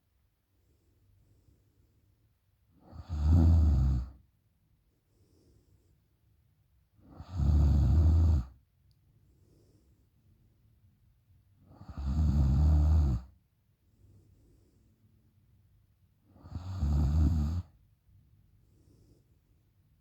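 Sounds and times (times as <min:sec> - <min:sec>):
woman snoring loudly: 0:02.9 - 0:04.1, 0:07.2 - 0:08.5, 0:11.8 - 0:13.3, 0:16.4 - 0:17.6
faint breathing: 0:05.0 - 0:06.2, 0:09.2 - 0:10.3, 0:13.8 - 0:15.2, 0:18.5 - 0:19.7.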